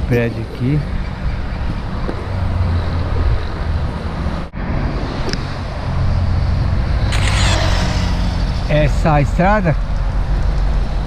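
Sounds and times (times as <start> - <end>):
road and wind noise: 0.0 - 11.0
car engine hum: 6.1 - 10.3.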